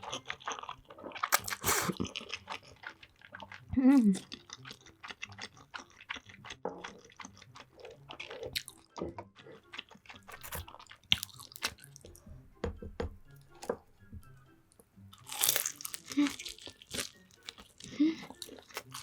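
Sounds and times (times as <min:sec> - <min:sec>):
biting: 0:00.0 - 0:03.6, 0:04.2 - 0:08.8, 0:09.4 - 0:12.0, 0:15.2 - 0:19.0
chewing and wet mouth sounds: 0:00.0 - 0:12.2, 0:15.1 - 0:19.0.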